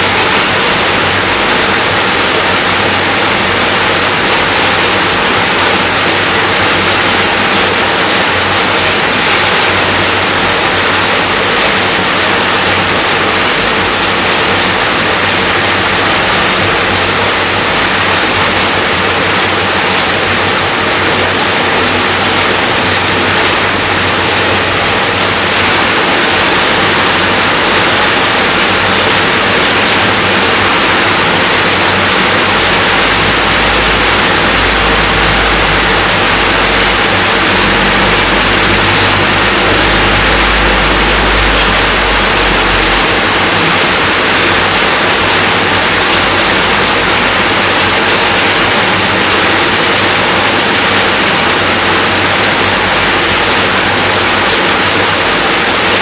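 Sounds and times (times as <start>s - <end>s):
dense rainfall hiss: 0.0s - 56.0s
low rumble: 32.4s - 44.8s.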